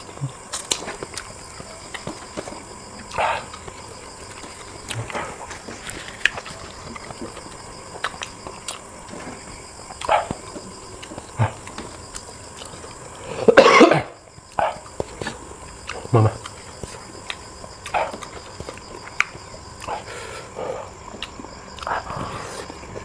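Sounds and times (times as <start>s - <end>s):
person chewing: 0.0s - 13.6s, 14.3s - 23.0s
loud cough: 13.3s - 14.2s.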